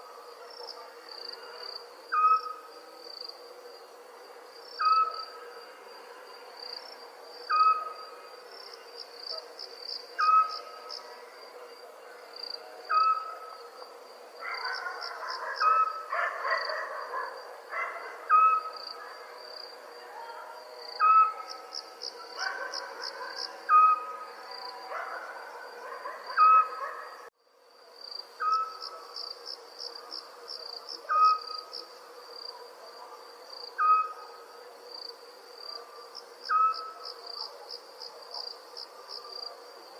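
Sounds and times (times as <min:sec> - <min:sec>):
crickets trilling: 0:00.0 - 0:39.9
owl hooting: 0:02.1 - 0:02.6, 0:10.2 - 0:10.6, 0:12.9 - 0:13.5, 0:14.5 - 0:17.3, 0:18.3 - 0:18.8, 0:21.0 - 0:21.5, 0:22.4 - 0:24.2, 0:26.3 - 0:27.0, 0:28.4 - 0:29.0, 0:31.1 - 0:31.6, 0:33.8 - 0:34.3, 0:36.5 - 0:37.0.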